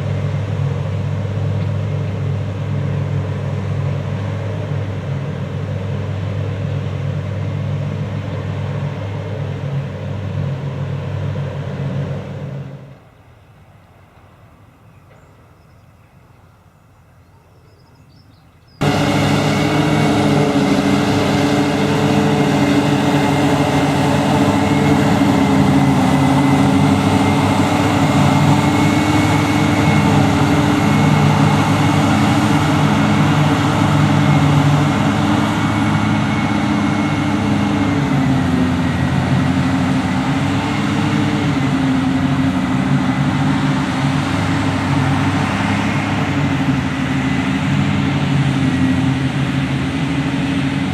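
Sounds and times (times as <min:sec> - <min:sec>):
diesel engine running: 0:00.0 - 0:13.4, 0:18.8 - 0:50.9
high whine: 0:18.8 - 0:50.9.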